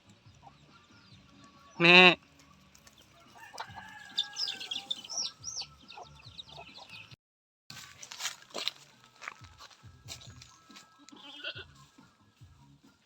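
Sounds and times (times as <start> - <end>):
chickens clucking: 2.8 - 7.2
higher chirping calls: 3.8 - 7.1.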